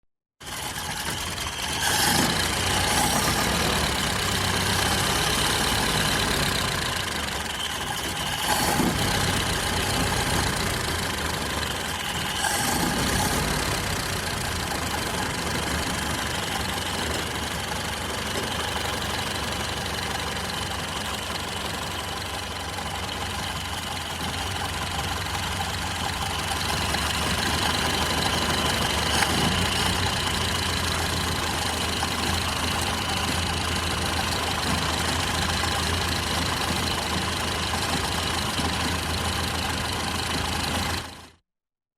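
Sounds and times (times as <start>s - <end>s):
car engine idling: 0.4s - 41.4s.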